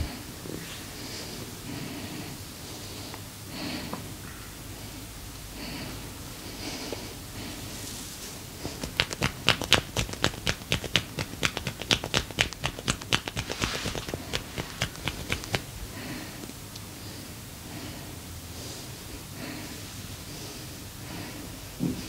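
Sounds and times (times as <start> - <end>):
hands tapping and slapping skin: 8.6 - 15.8.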